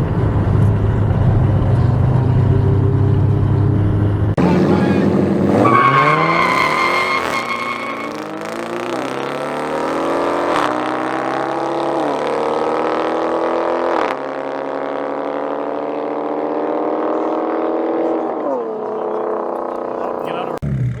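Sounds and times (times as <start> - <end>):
car engine accelerating hard: 0.0 - 21.0.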